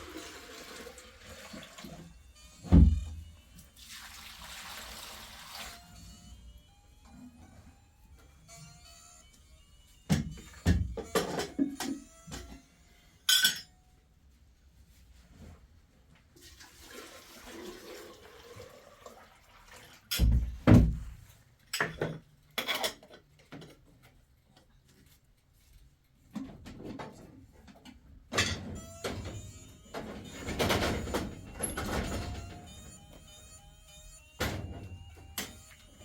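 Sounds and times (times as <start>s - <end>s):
water sloshing and pouring: 0.0s - 2.2s, 3.6s - 5.9s, 16.4s - 20.2s.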